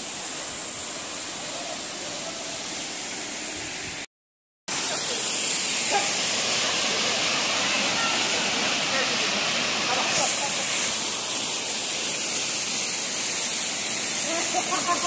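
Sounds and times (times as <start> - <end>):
waterfall rushing: 4.7 - 15.0.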